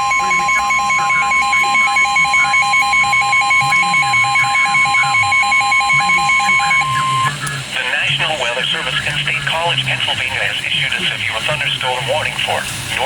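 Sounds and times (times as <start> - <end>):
high alarm tone: 0.0 - 7.4
rapid alarm beeps: 0.0 - 7.4.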